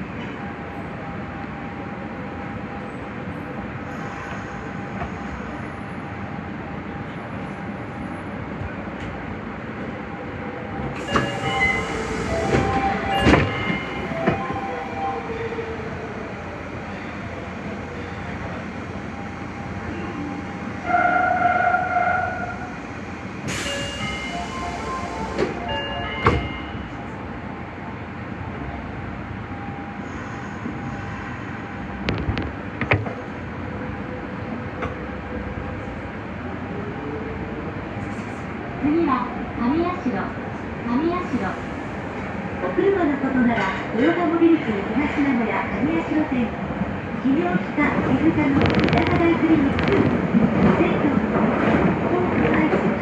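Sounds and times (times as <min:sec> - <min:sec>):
train running noise: 0:00.0 - 0:53.0
air hiss: 0:11.0 - 0:12.8
brake squeal: 0:11.0 - 0:14.0
train warning horn: 0:20.8 - 0:22.6.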